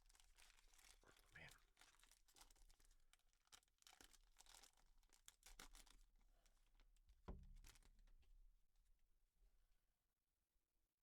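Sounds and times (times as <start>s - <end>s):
wrapper crinkling and tearing: 0.1s - 1.2s, 1.8s - 6.0s.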